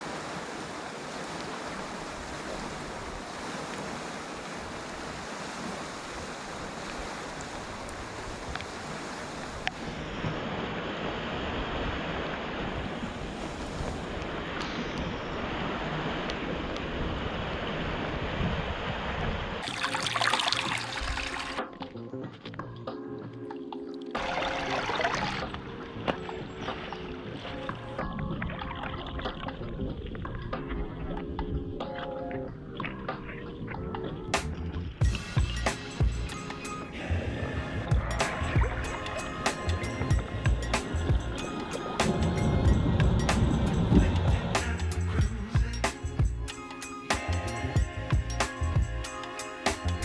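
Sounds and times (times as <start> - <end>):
water rushing at a dam: 0.0 - 21.6, 24.2 - 25.6.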